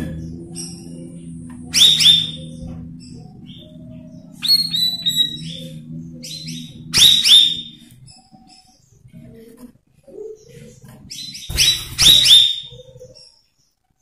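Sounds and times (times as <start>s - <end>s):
bird whistling: 0.0s - 8.7s, 11.1s - 13.3s
steady low hum: 0.0s - 13.4s.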